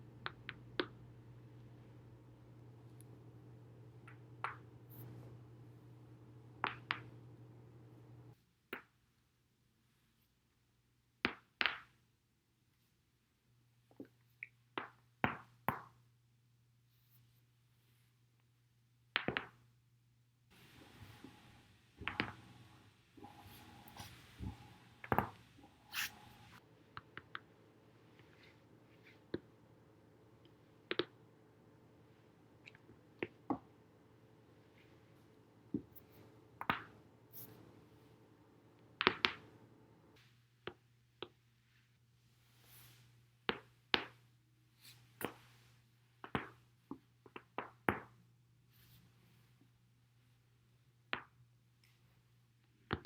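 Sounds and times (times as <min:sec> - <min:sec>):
low steady hum: 0:00.0 - 0:08.4, 0:19.8 - 0:43.5.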